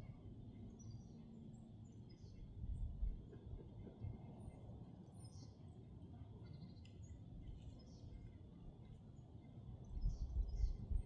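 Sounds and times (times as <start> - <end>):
wind rumble on microphone: 2.3 - 4.9, 9.6 - 11.0.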